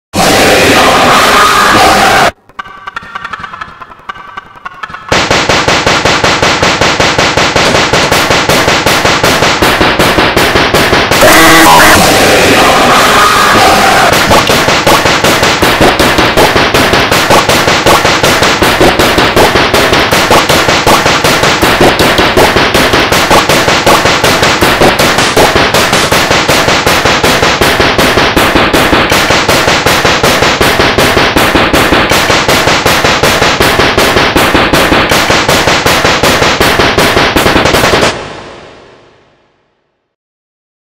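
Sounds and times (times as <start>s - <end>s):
distorted sneeze remix: 0.2s - 2.3s, 11.2s - 15.0s.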